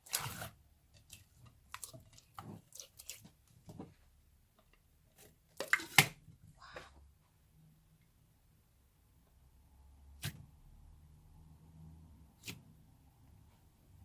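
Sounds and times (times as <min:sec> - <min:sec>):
slime squishing in hands: 0:00.0 - 0:03.8.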